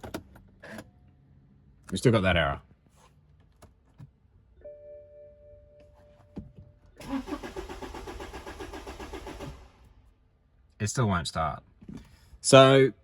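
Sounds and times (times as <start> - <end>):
diesel engine cranking on starter: 7.0 - 10.0.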